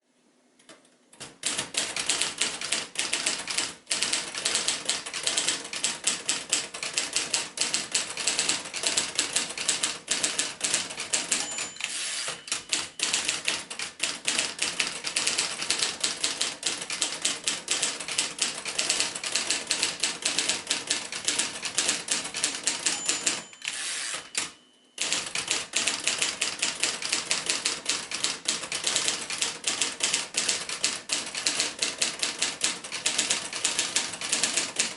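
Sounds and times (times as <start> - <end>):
typewriter keystrokes: 0.7 - 34.9
typewriter bell ring: 7.2 - 14.6, 21.3 - 29.1.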